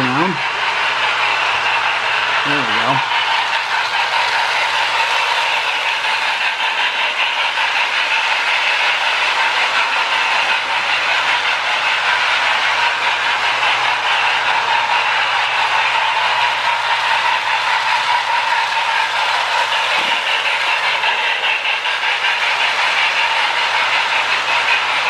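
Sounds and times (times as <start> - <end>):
low motor hum: 0.0 - 6.4, 14.6 - 22.0.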